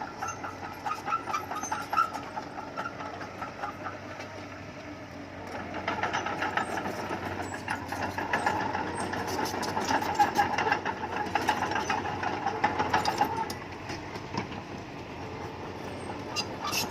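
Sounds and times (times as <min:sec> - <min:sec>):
diesel engine chugging: 0:00.0 - 0:16.9.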